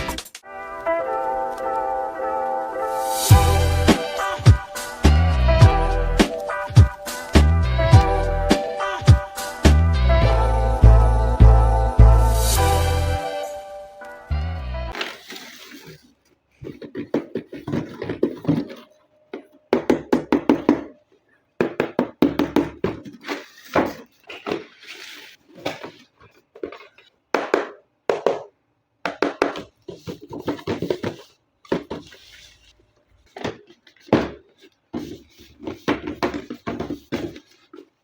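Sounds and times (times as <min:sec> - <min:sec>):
toy packaging handled: 0:14.9 - 0:19.8, 0:22.8 - 0:27.3, 0:29.6 - 0:38.0.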